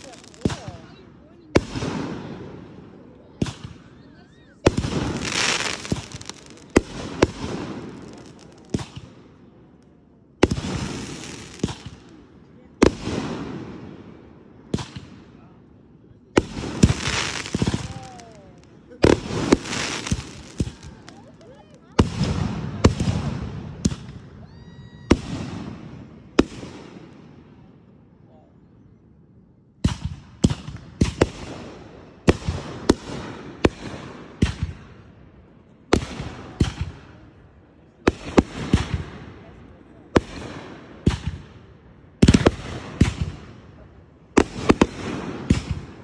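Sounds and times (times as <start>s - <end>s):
firework crackling and pops: 0.0s - 0.9s, 4.6s - 12.2s, 16.4s - 24.3s, 42.2s - 46.0s
fireworks bangs with hiss: 0.0s - 4.0s, 4.6s - 15.5s, 16.3s - 27.8s, 29.8s - 46.0s.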